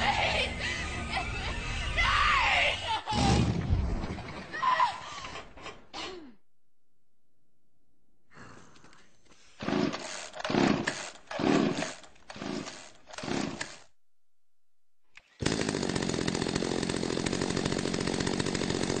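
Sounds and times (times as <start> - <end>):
chainsaw revving: 0.0 - 2.0, 9.6 - 13.9, 15.3 - 19.0.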